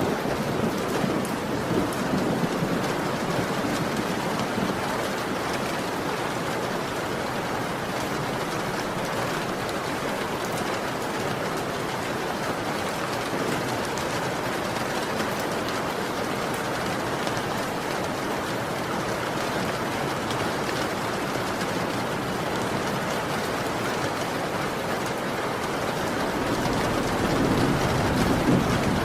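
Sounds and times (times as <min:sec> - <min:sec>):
low rumble of thunder: 0:00.0 - 0:05.3, 0:25.7 - 0:29.0
heavy rain falling: 0:00.0 - 0:29.0.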